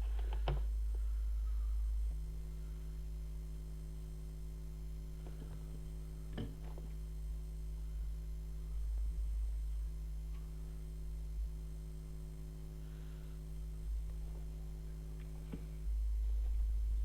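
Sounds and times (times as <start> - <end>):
electrical mains hum: 0.0 - 17.0.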